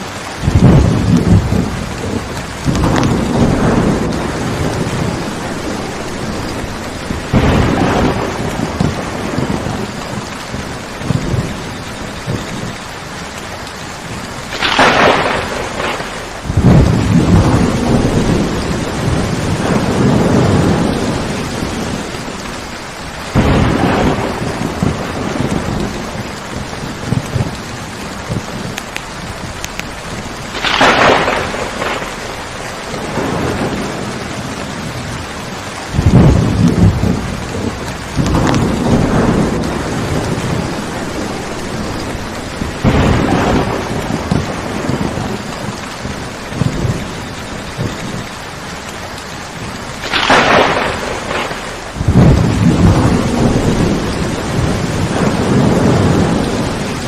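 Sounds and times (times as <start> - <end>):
low rolling thunder rumble: 0.0 - 57.0
steady rain: 0.0 - 57.0
thunder claps: 0.0 - 57.0.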